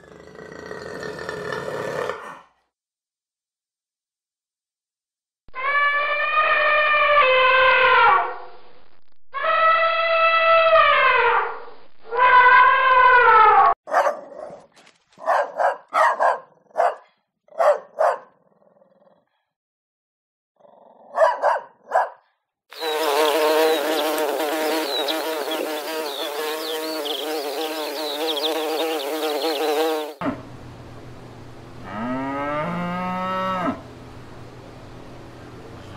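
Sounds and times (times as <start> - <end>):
dog barking: 13.9 - 18.4, 21.1 - 22.3
insects buzzing: 22.7 - 30.2.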